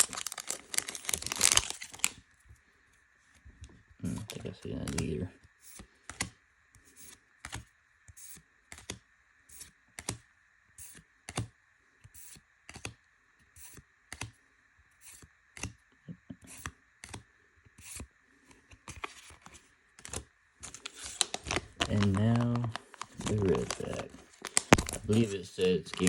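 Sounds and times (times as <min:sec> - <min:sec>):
trading cards clicking: 0:04.1 - 0:05.1, 0:20.0 - 0:26.0.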